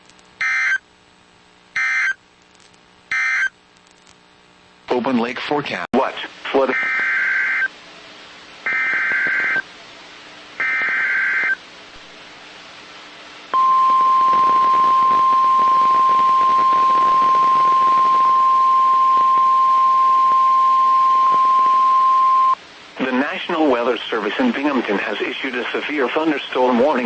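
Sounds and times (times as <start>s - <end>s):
buzzing data screech: 0.4s - 0.8s, 1.8s - 2.2s, 3.1s - 3.6s, 6.6s - 7.7s, 8.7s - 9.6s, 10.6s - 11.6s
steady alarm tone: 0.4s - 0.8s, 1.8s - 2.2s, 3.1s - 3.5s, 6.7s - 7.7s, 8.7s - 9.6s, 10.6s - 11.6s, 13.6s - 22.6s.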